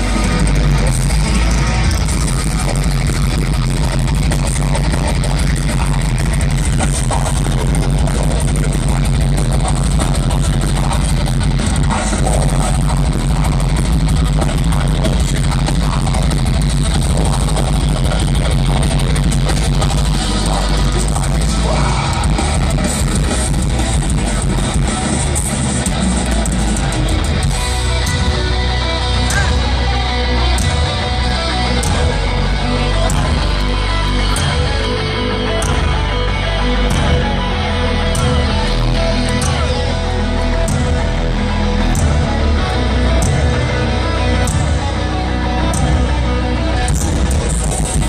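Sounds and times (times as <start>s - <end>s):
live metal band playing: 0.0s - 48.0s.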